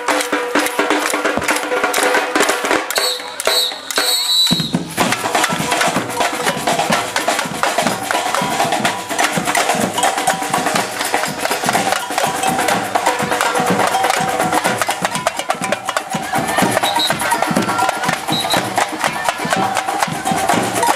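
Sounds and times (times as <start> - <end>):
samba drums playing fast rhythm: 0.0 - 20.9.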